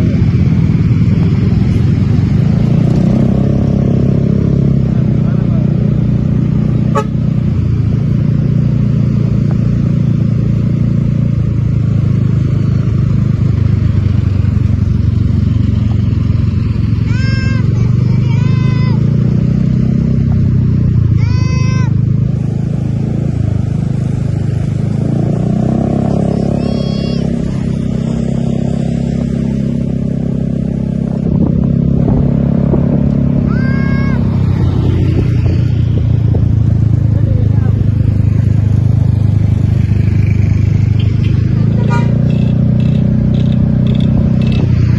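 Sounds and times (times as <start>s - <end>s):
vehicle engine and road rumble: 0.0s - 44.9s
multi-tone bus horn note: 6.9s - 7.3s, 41.7s - 42.5s.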